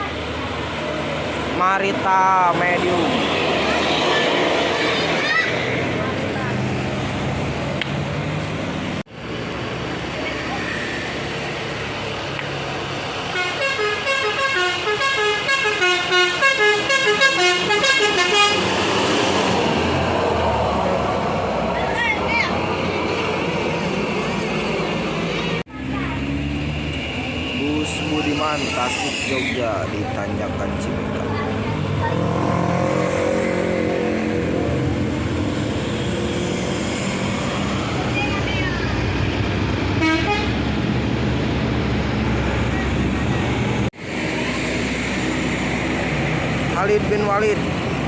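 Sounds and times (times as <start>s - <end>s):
bus engine noise: 0.0s - 48.0s
road noise: 0.0s - 48.0s
musical air horn melody: 13.4s - 18.6s, 40.0s - 40.5s.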